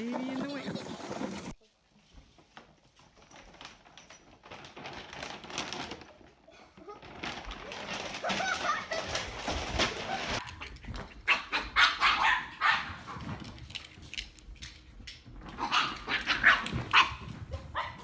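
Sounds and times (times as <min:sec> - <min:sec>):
dog barking: 0:11.3 - 0:13.0, 0:15.6 - 0:18.0.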